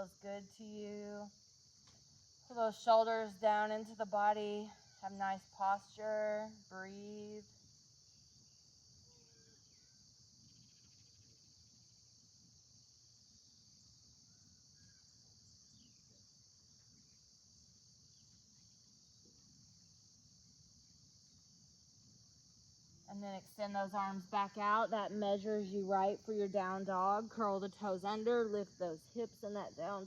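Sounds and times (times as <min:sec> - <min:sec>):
faint insect chorus: 0:00.0 - 0:30.0
faint bird chirps: 0:14.2 - 0:17.2.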